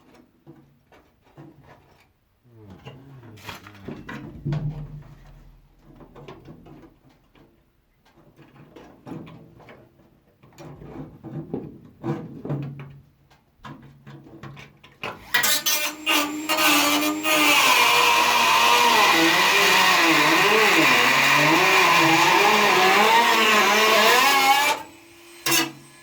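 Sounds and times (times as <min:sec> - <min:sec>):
electric power tool running: 0:15.2 - 0:26.0.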